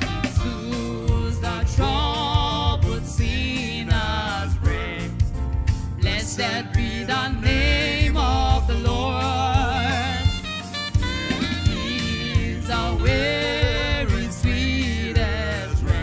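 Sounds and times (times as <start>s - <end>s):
drum kit beat: 0.0s - 16.0s
gospel hymn music: 0.0s - 16.0s
vibrato lead melody: 7.6s - 16.0s.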